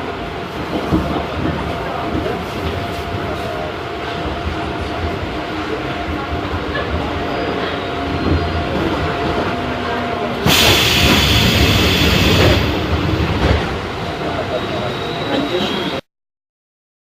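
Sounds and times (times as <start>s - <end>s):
subway train running rumble: 0.0s - 16.0s
loud hiss: 10.4s - 13.3s.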